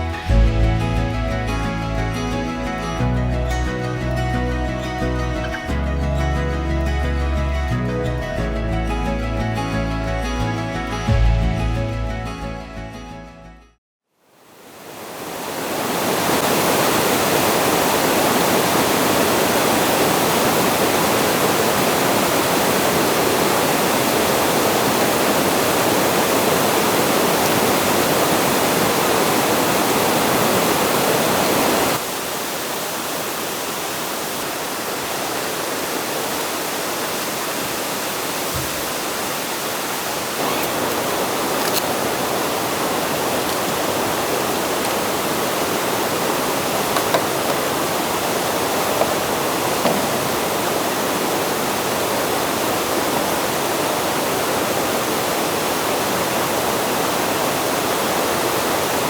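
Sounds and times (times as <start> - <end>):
rushing flowing water: 14.3 - 59.0.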